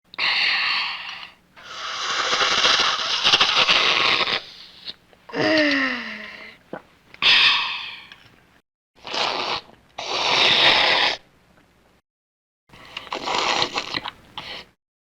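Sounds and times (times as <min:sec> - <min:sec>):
child slurping soup: 0:00.2 - 0:06.6, 0:09.0 - 0:11.2, 0:12.8 - 0:14.8.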